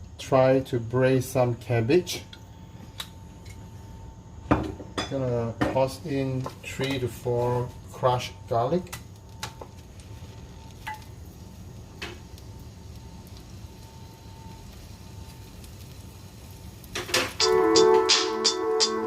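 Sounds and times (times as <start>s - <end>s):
garlic sizzling in hot oil: 8.1s - 17.8s.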